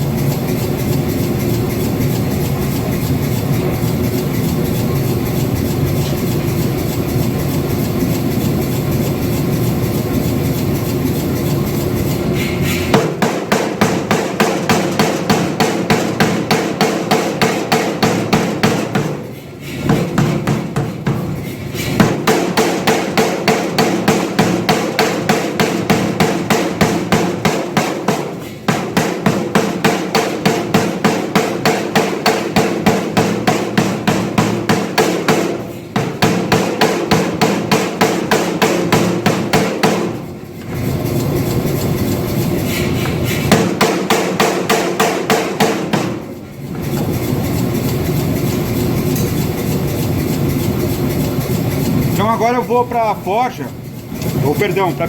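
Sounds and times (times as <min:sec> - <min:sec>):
mechanical running sound: 0:00.0 - 0:15.4, 0:40.0 - 0:43.8, 0:46.2 - 0:55.0
power hammer striking hot steel: 0:00.0 - 0:55.0.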